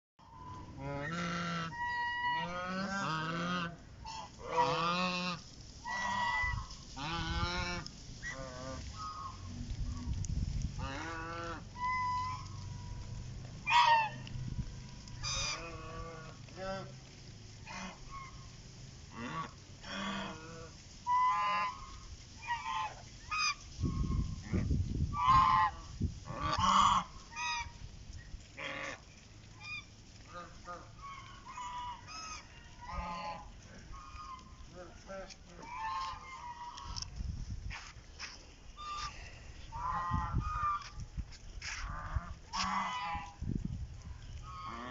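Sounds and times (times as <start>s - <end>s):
birds calling: 0.2s - 10.2s, 10.8s - 37.1s, 38.2s - 41.0s
low rumble: 0.3s - 19.8s.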